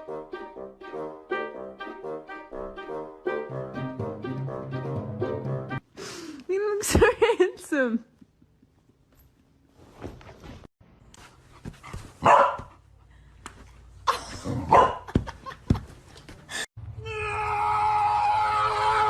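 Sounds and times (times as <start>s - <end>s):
dog barking: 12.2s - 12.8s, 14.7s - 15.1s.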